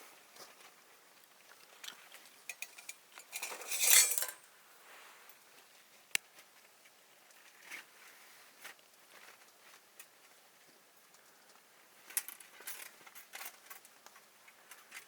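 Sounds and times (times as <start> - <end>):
metal utensils clinking: 2.5 - 4.4.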